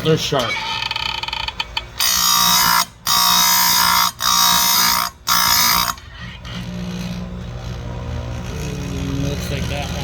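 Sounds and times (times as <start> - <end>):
grinder wheel grinding chain tooth: 0.4 - 10.0
grinder motor humming: 1.9 - 10.0.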